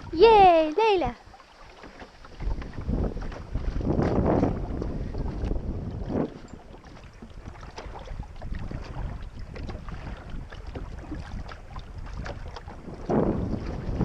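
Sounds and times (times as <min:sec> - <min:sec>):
water splashing against hull: 0:00.0 - 0:14.0
wind rumbling on microphone: 0:00.0 - 0:14.0.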